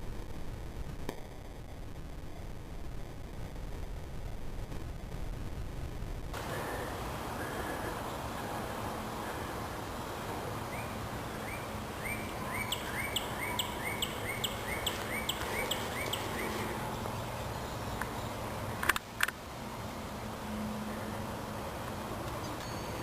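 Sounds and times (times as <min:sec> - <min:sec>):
outdoor background noise: 0:00.0 - 0:23.0
bird chirping: 0:10.6 - 0:18.6
sharp clicks: 0:18.8 - 0:19.4.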